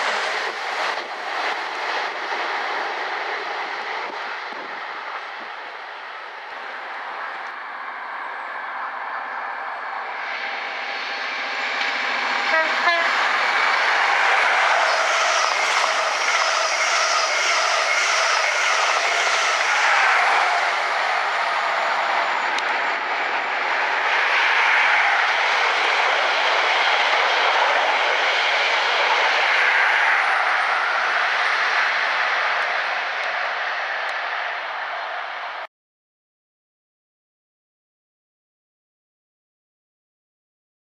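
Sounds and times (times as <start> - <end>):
train wheels rushing on rails: 0.0 - 35.7
train horn: 12.4 - 13.6.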